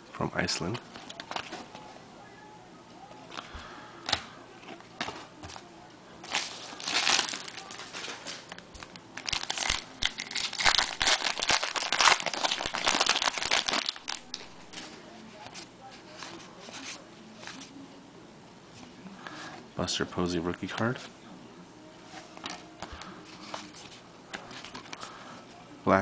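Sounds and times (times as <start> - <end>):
foil wrapper crinkling and tearing: 6.2 - 14.8.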